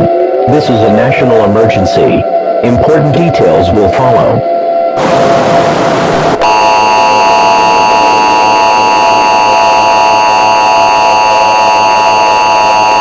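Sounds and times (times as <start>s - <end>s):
burst of static: 5.0s - 13.0s
two-tone alert tone: 6.4s - 13.0s.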